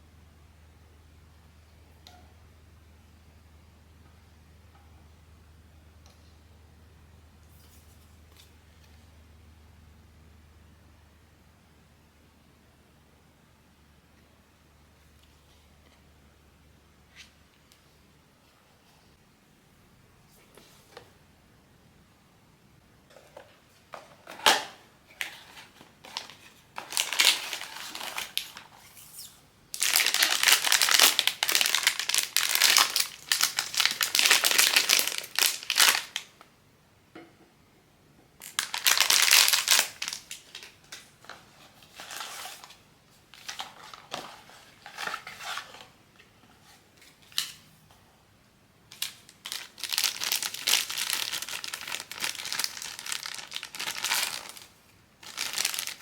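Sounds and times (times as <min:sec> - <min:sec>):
packaging crinkling: 0:25.2 - 0:29.2, 0:29.8 - 0:36.3, 0:38.4 - 0:42.8, 0:48.9 - 0:56.0.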